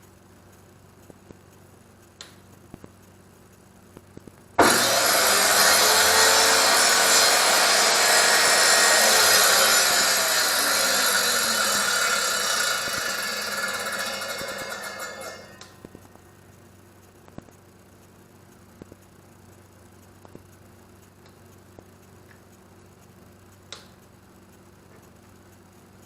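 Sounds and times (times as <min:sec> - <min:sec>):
table saw running: 0:04.6 - 0:15.8.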